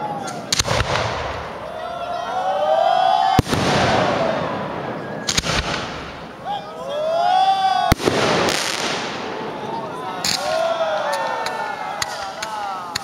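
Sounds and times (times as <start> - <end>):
firework shells bursting: 5.0 - 6.4.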